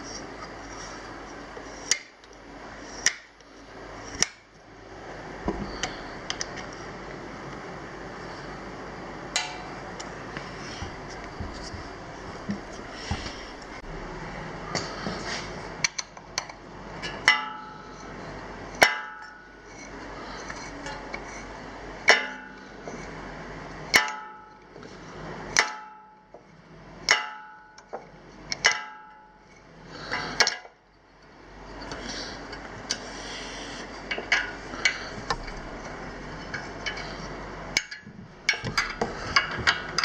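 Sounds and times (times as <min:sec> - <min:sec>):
metal-on-metal strikes: 0:09.3 - 0:09.8, 0:17.1 - 0:17.9, 0:18.8 - 0:19.5, 0:22.1 - 0:22.7, 0:27.1 - 0:27.8.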